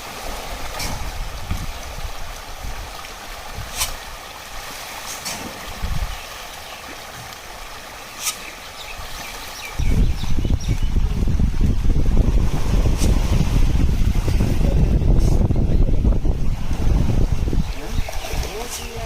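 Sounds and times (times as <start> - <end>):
wind buffeting microphone: 0.5 - 4.0, 5.5 - 6.2, 9.1 - 19.0.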